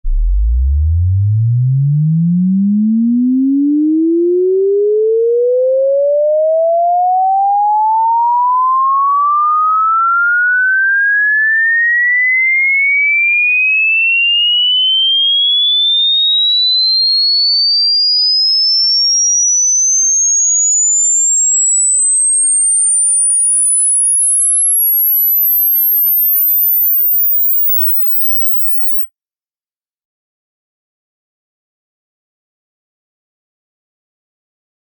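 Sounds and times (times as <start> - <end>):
rising sine tone sweep: 0.0 - 9.0, 14.3 - 16.5, 18.5 - 29.1.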